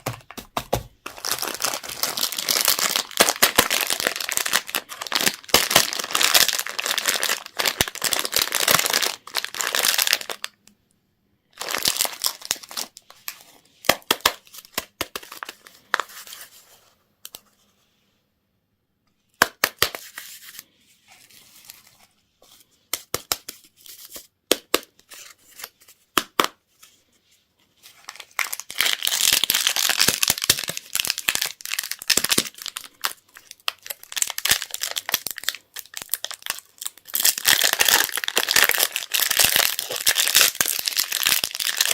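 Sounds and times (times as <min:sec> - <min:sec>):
plastic wrappers crinkling: 0:00.0 - 0:10.6, 0:11.5 - 0:16.4, 0:27.9 - 0:41.9.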